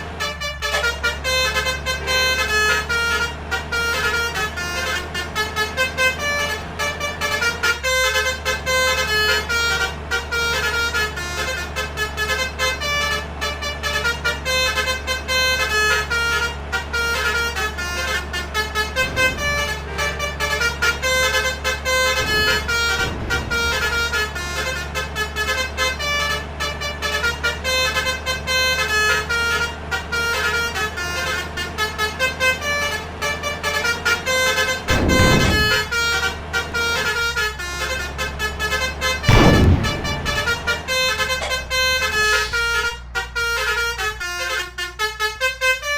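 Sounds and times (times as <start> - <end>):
multi-trumpet air horn tune: 13.6 - 25.6, 26.6 - 45.9
steady low hum: 39.3 - 43.0.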